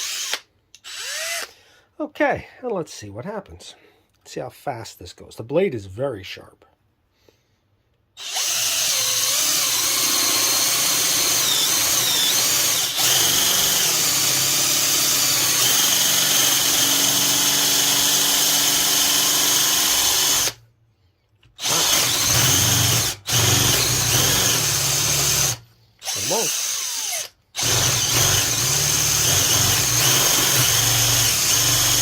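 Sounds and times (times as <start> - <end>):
power drill boring into wood: 0.0 - 1.5, 8.2 - 20.6, 21.6 - 32.0.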